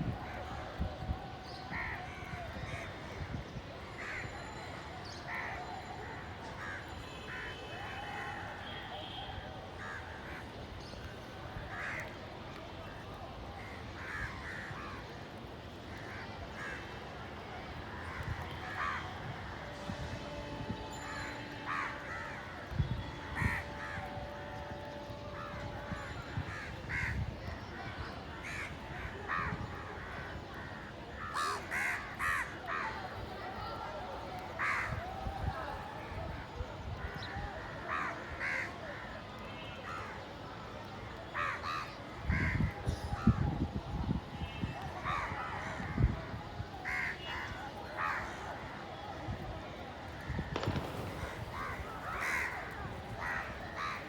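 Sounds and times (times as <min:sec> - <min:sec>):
crows cawing: 0:13.6 - 0:15.0, 0:23.4 - 0:24.1, 0:26.5 - 0:27.2, 0:29.3 - 0:32.9, 0:37.9 - 0:38.7, 0:46.8 - 0:48.4, 0:50.5 - 0:54.0.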